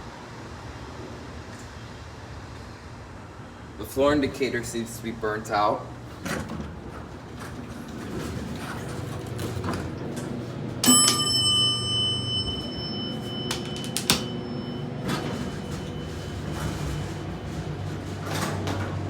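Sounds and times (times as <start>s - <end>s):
elevator arrival bell ringing: 8.9s - 19.0s.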